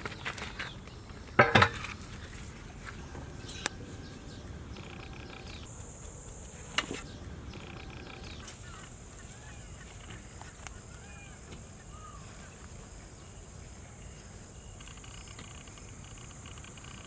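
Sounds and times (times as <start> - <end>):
metal clanks with ring: 3.0 - 4.4.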